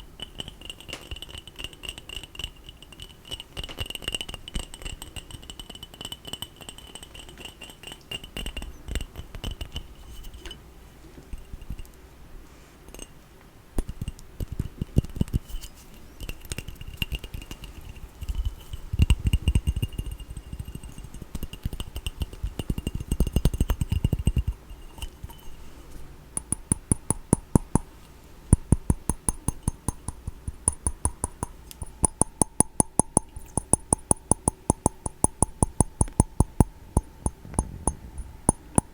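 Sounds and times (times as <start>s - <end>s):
rapid ringing taps: 13.8s - 25.6s, 26.4s - 38.9s.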